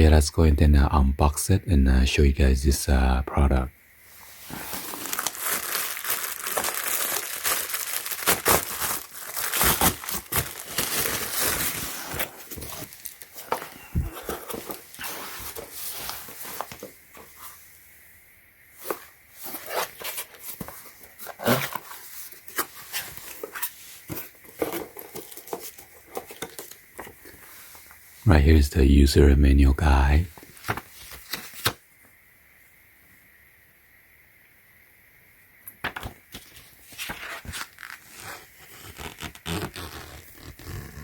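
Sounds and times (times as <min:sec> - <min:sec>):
packaging crinkling and tearing: 0:04.5 - 0:16.9, 0:18.8 - 0:27.4, 0:30.4 - 0:31.8, 0:36.0 - 0:41.0.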